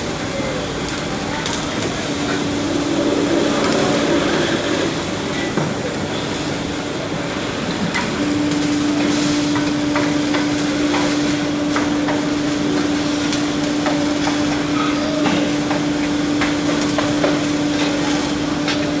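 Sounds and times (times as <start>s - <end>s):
welding arc crackling: 0.0s - 19.0s
steady low hum: 1.1s - 9.0s.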